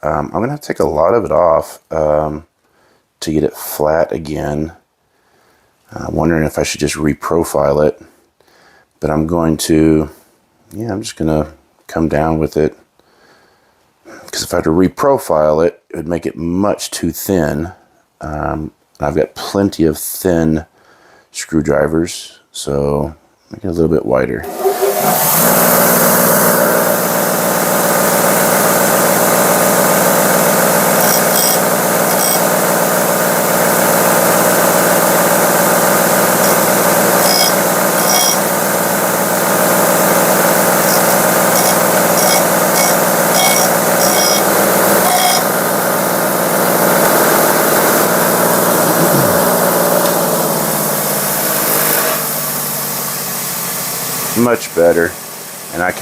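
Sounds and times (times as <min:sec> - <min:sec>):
metal scraping on grinder: 0:24.5 - 0:27.2, 0:28.0 - 0:45.7, 0:46.8 - 0:53.0
electric grinder running: 0:24.5 - 0:55.7.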